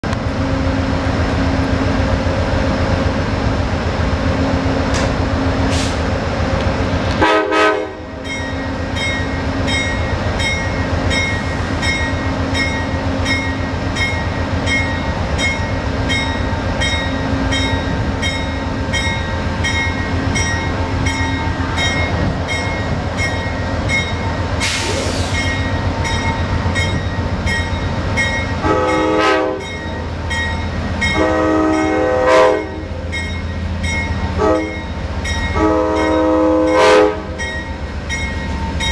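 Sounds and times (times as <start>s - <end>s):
diesel locomotive engine rumble: 0.0s - 38.9s
locomotive horn chords: 7.1s - 8.2s, 28.6s - 29.8s, 31.0s - 32.9s, 34.4s - 34.9s, 35.5s - 37.4s
locomotive bell ringing: 8.1s - 24.6s, 25.3s - 38.9s
air hiss: 24.6s - 25.5s.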